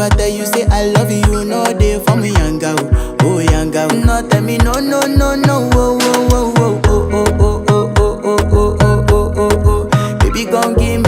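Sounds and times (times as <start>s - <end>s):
music with heavy drum beat: 0.0s - 11.0s.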